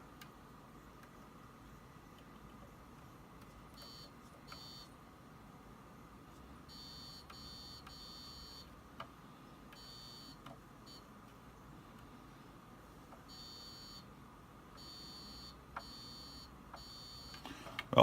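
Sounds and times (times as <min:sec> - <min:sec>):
high-pitched tester beeps: 0:03.8 - 0:04.9, 0:06.7 - 0:08.7, 0:09.8 - 0:11.0, 0:13.3 - 0:14.0, 0:14.8 - 0:17.4.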